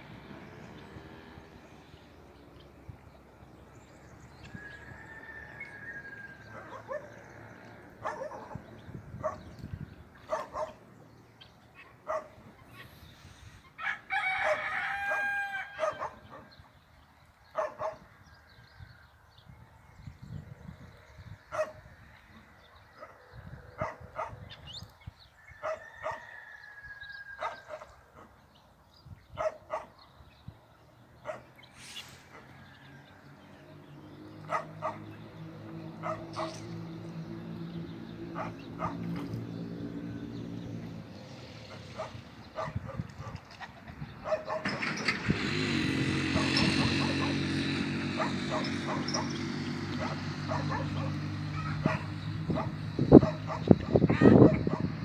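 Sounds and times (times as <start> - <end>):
dog barking: 6.5 - 7.2, 8.0 - 9.5, 10.3 - 10.8, 11.8 - 12.4, 15.8 - 16.5, 17.5 - 18.0, 21.5 - 21.8, 23.8 - 24.4, 25.6 - 26.3, 27.4 - 28.4, 29.4 - 30.0, 31.2 - 31.5, 34.5 - 35.2, 36.0 - 36.7, 38.4 - 39.1, 41.7 - 43.4, 44.2 - 44.7, 46.4 - 47.4, 48.2 - 49.4, 50.0 - 55.0.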